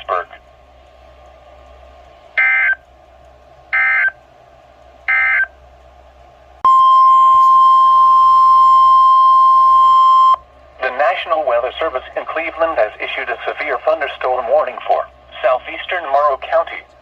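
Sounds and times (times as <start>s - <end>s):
steady warning alarm tone: 2.4s - 2.8s, 3.7s - 4.2s, 5.1s - 5.6s, 6.6s - 10.4s.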